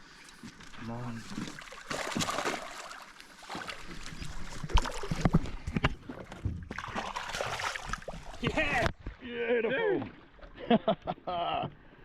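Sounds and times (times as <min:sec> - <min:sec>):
water splashing: 0:00.0 - 0:10.5
knocks and thumps in a boat: 0:04.7 - 0:09.2.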